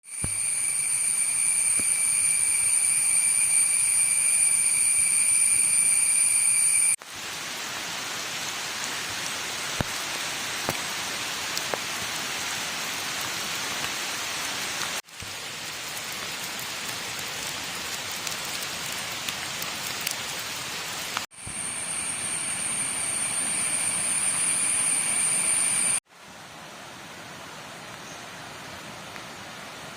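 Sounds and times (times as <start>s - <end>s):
steady rain in forest: 0.0s - 29.9s
high-pitched shrill drone: 21.6s - 26.0s.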